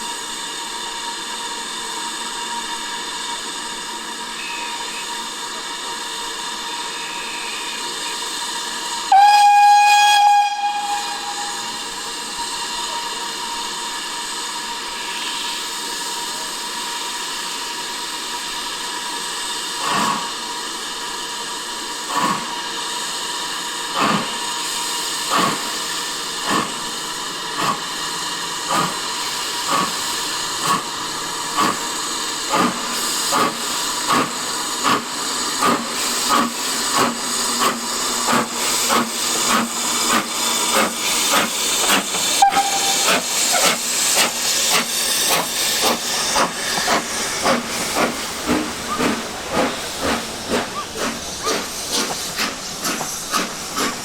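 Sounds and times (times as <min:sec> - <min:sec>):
steam locomotive hissing: 0:00.0 - 0:54.0
steam whistle blast: 0:04.3 - 0:05.4, 0:08.9 - 0:13.1, 0:42.2 - 0:43.7.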